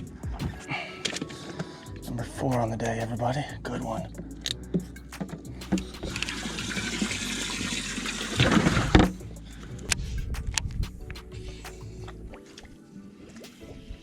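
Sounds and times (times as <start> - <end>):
water rushing and splashing: 5.2 - 9.2.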